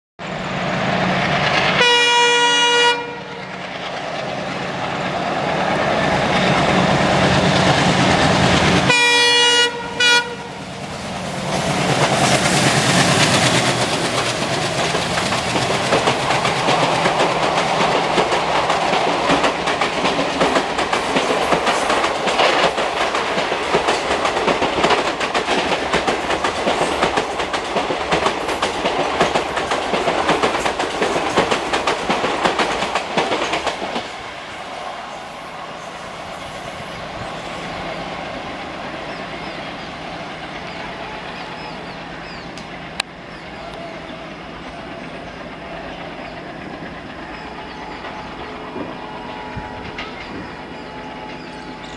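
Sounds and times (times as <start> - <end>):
train clickety-clack on rails: 0.6 - 51.9
locomotive horn blasts: 1.8 - 3.4, 8.9 - 10.6, 48.7 - 50.0.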